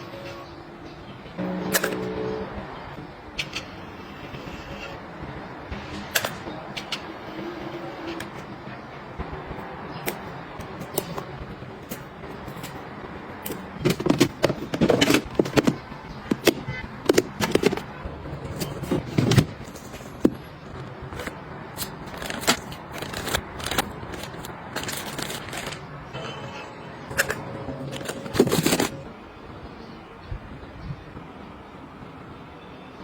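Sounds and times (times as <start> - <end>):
household items clicking and knocking: 10.0 - 25.9, 27.1 - 29.0
rustling and scraping: 13.5 - 25.9, 27.2 - 29.1.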